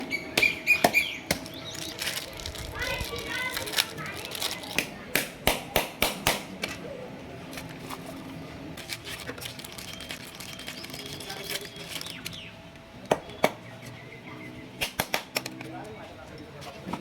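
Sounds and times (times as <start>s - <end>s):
thin chirps: 0.1s - 4.8s, 8.8s - 14.6s
faint background voices: 1.0s - 17.0s.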